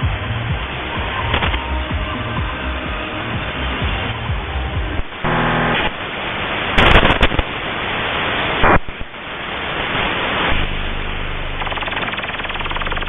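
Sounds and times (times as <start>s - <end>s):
loud radio crackling bursts: 0.0s - 1.8s, 4.9s - 13.0s
radio static hiss: 0.0s - 13.0s
buzzing tone: 3.5s - 6.0s, 6.8s - 7.5s, 11.3s - 13.0s.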